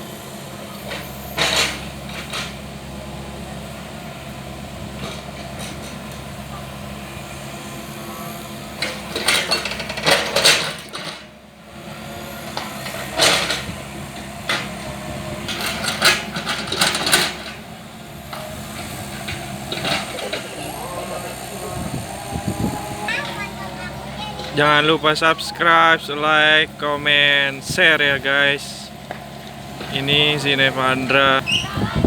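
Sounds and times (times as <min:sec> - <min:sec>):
excavator engine running: 0:00.0 - 0:32.0
loud clattering and scraping: 0:00.9 - 0:02.7, 0:08.7 - 0:11.4, 0:12.5 - 0:32.0.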